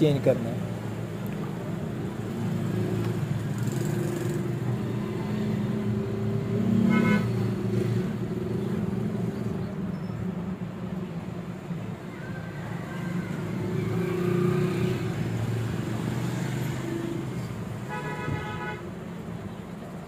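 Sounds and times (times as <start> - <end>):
horn toot: 6.8 - 7.4, 17.9 - 18.8.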